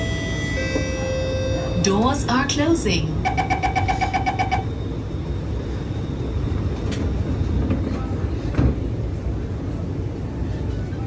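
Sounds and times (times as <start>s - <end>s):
door warning beeps: 0.0s - 2.4s, 3.1s - 4.8s
train low rumble: 0.0s - 11.0s.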